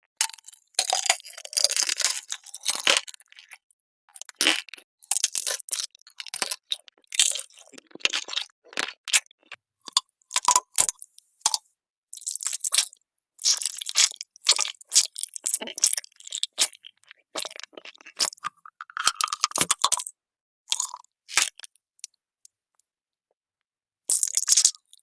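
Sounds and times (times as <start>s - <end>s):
crunchy food being chewed: 0.2s - 11.6s, 12.2s - 22.2s, 24.1s - 25.0s.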